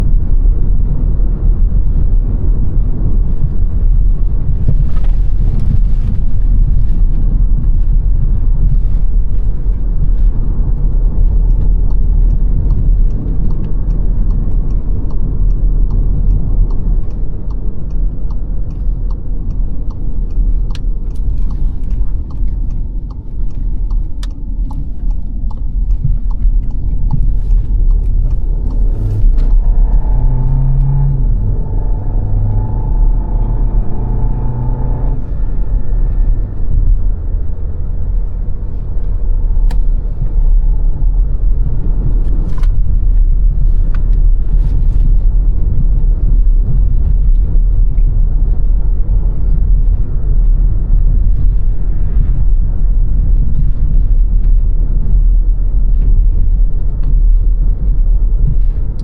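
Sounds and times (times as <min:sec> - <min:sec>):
car tyres and engine rumble: 0:00.0 - 0:59.0
small clicks and ticks: 0:08.7 - 0:31.2.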